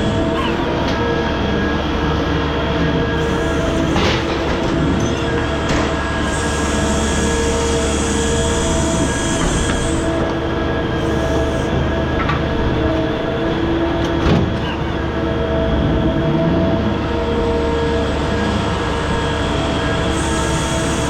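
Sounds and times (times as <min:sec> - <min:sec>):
hydraulic machinery running: 0:00.0 - 0:21.0
high hydraulic hiss: 0:03.2 - 0:04.3, 0:05.9 - 0:10.2, 0:11.0 - 0:11.7, 0:20.0 - 0:21.0.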